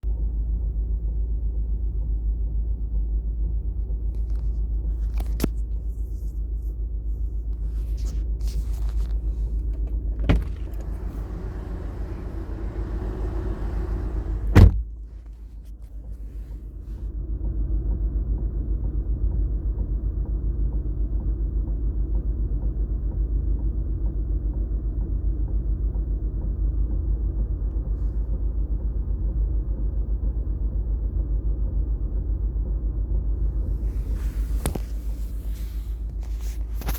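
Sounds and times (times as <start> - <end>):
diesel engine running: 8.4 - 14.8.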